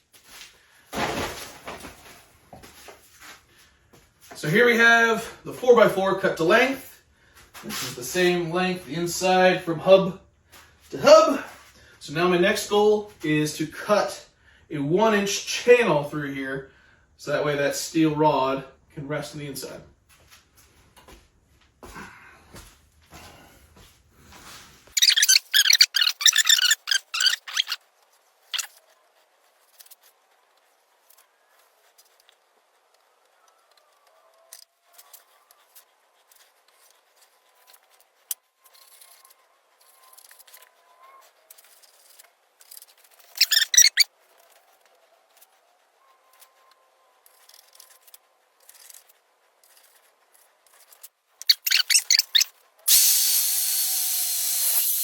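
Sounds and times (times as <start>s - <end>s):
handling and rubbing on wood: 24.4s - 52.8s
faint ticks and scrapes: 24.5s - 52.8s
quick loud scraping strokes: 43.3s - 44.1s
power tool whining: 52.9s - 55.0s.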